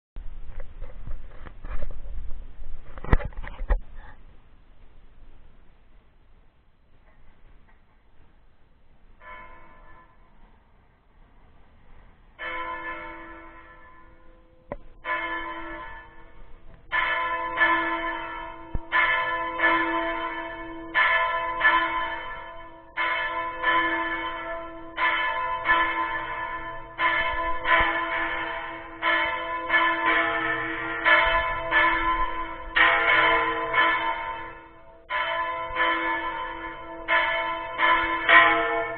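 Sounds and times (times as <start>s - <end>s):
small church bell ringing: 9.2s - 10.5s, 12.4s - 38.9s.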